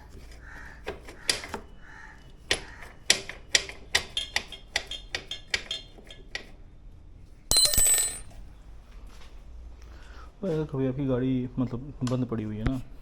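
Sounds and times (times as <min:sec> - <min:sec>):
ringing metallic clatter: 0:07.5 - 0:08.3.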